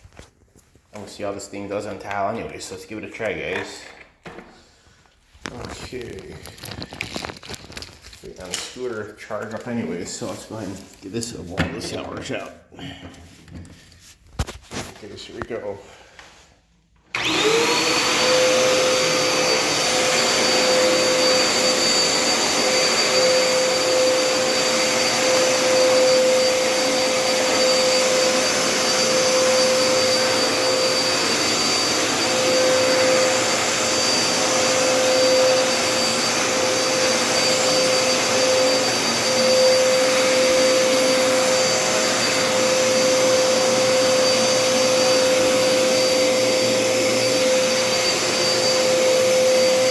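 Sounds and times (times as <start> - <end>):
stick vacuum motor whine: 17.1 - 49.9.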